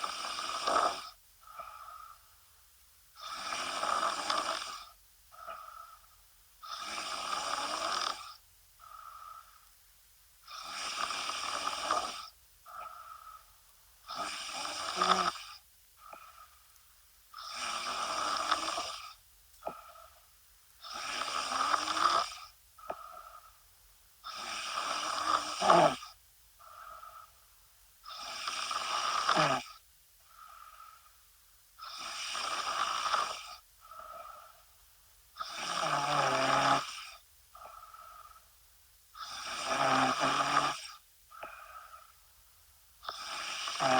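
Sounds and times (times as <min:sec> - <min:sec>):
woman snoring: 0:00.0 - 0:02.2, 0:03.2 - 0:09.6, 0:10.5 - 0:16.6, 0:17.3 - 0:20.2, 0:20.8 - 0:23.6, 0:24.3 - 0:27.4, 0:28.1 - 0:31.0, 0:31.8 - 0:34.6, 0:35.4 - 0:38.4, 0:39.2 - 0:42.2, 0:43.0 - 0:43.9
faint breath sound: 0:00.0 - 0:09.8, 0:10.4 - 0:35.6, 0:36.9 - 0:39.7, 0:40.4 - 0:43.9.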